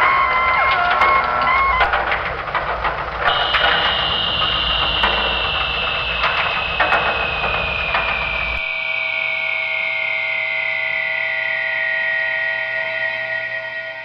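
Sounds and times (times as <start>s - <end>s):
low rumble: 1.6s - 8.8s
high electronic whine: 3.2s - 14.0s.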